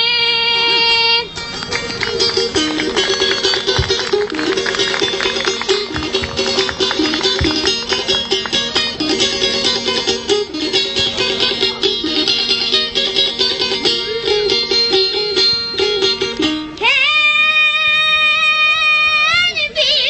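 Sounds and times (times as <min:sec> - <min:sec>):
plucked-string melody over drone: 0:00.0 - 0:17.2
child singing: 0:16.8 - 0:20.0.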